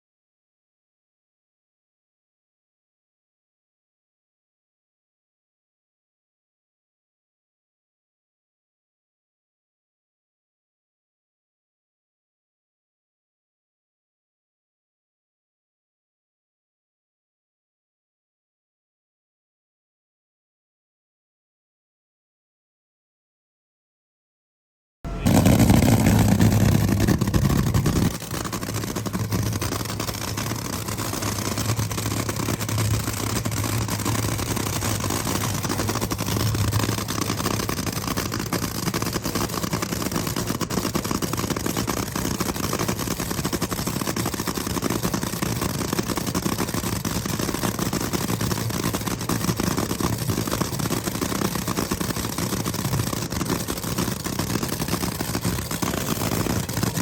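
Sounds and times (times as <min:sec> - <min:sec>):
engine running with ticking: 0:25.1 - 0:57.0.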